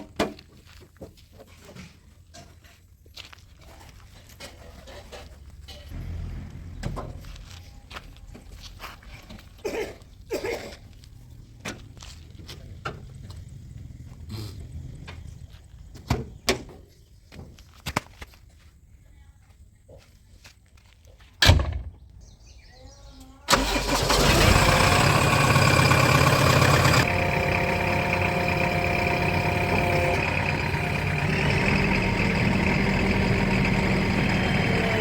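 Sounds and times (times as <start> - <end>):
diesel engine starting and running: 5.6 - 9.4, 23.5 - 35.0.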